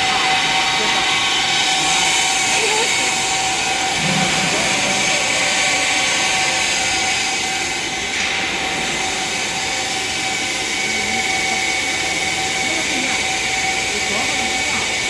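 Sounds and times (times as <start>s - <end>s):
drilling machine whirring: 0.0s - 15.0s
high spindle whine: 0.0s - 15.0s.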